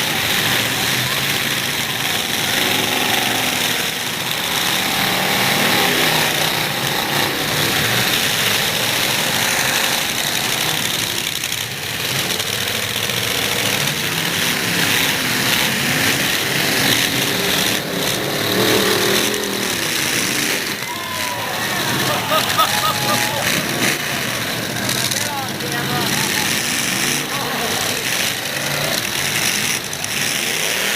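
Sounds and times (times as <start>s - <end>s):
truck engines revving: 0.0s - 30.9s.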